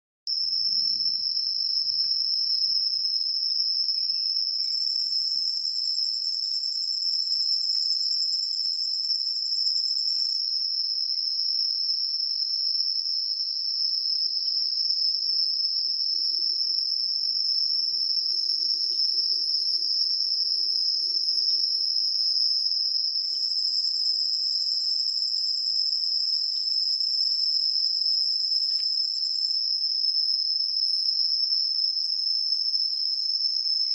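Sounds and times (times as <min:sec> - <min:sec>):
insect chorus trilling: 0:00.3 - 0:33.9.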